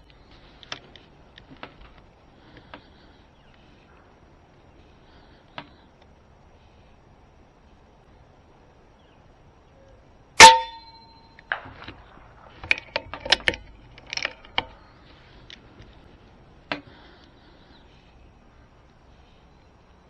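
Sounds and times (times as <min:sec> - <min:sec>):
airgun shot crack: 0:11.5 - 0:13.0.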